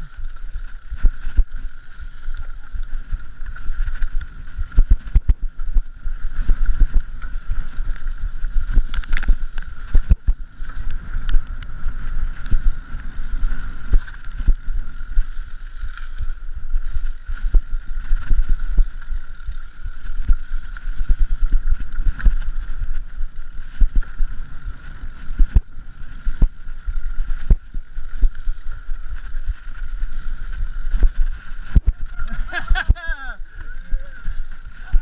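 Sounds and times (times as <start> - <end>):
steady high hum: 0.0 - 35.0
wind rumbling on microphone: 0.0 - 35.0.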